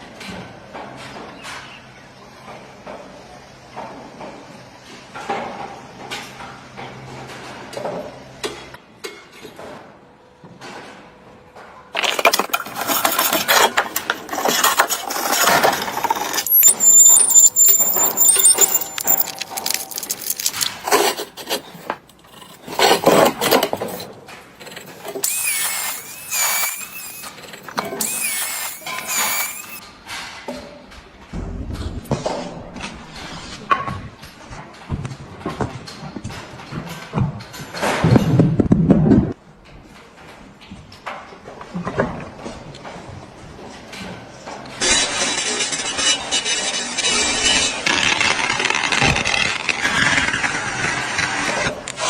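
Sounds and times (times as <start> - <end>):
dense tool work with knocks: 11.6 - 38.9.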